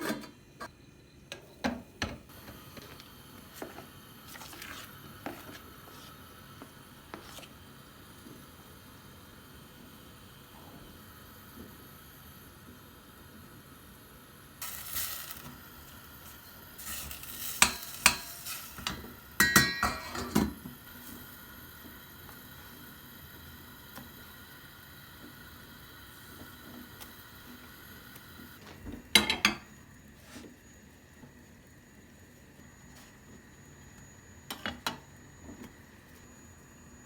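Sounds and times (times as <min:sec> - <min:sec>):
dishes knocking and clinking: 0:18.8 - 0:20.6, 0:28.9 - 0:29.7.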